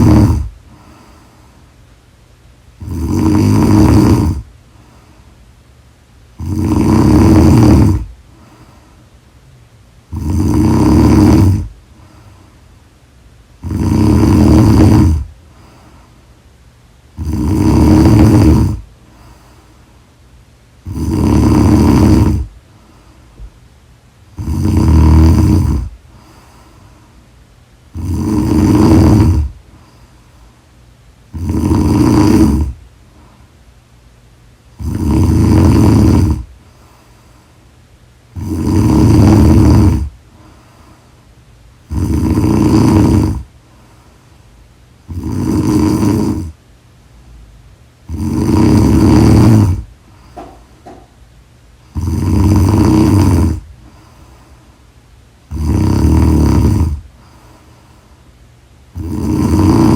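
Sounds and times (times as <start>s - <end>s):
person snoring loudly: 0.0s - 1.1s, 2.8s - 4.5s, 6.4s - 8.6s, 10.1s - 12.2s, 13.6s - 15.8s, 17.2s - 19.5s, 20.8s - 22.5s, 24.3s - 26.6s, 27.9s - 29.6s, 31.3s - 32.8s, 34.7s - 36.5s, 38.3s - 40.2s, 41.8s - 43.5s, 45.1s - 46.6s, 48.0s - 51.0s, 51.9s - 54.2s, 55.5s - 57.4s, 58.9s - 59.9s
quiet breathing: 0.0s - 47.4s, 48.0s - 59.9s.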